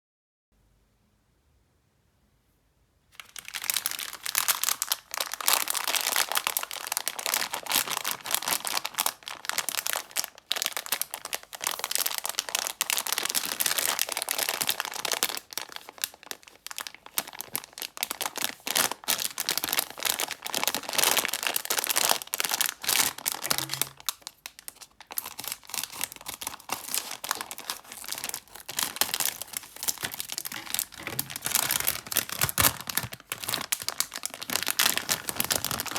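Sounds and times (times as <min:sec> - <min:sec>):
candy wrappers crinkling: 0:03.2 - 0:35.9.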